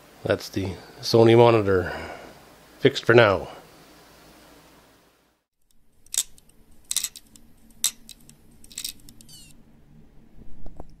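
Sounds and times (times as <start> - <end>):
faint low hum: 5.7 - 11.0.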